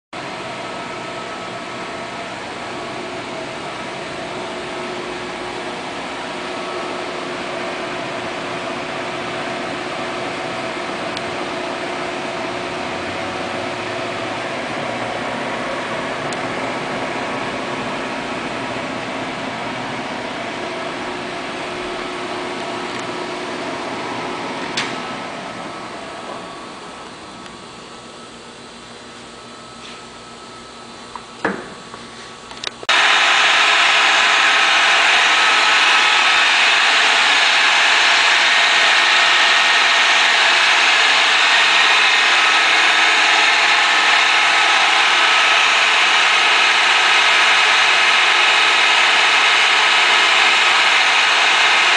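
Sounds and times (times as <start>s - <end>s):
metal lathe running: 32.9s - 51.9s.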